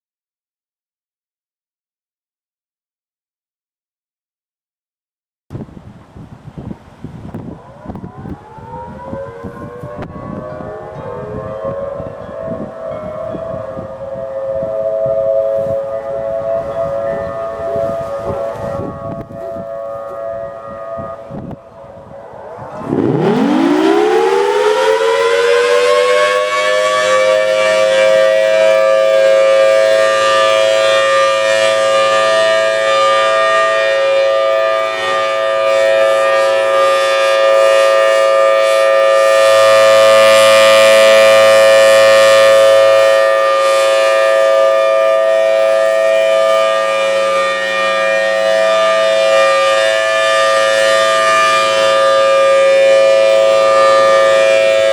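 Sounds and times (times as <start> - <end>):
warning siren wailing: 7.0 - 54.9.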